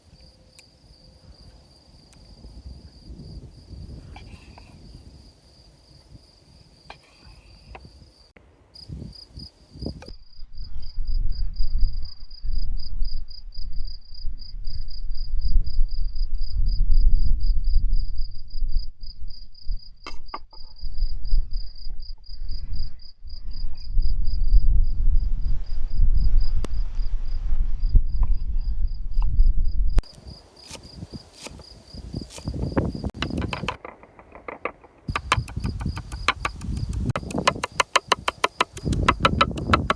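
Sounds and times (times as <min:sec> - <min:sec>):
crickets chirring: 0:00.0 - 0:10.1, 0:30.0 - 0:39.9.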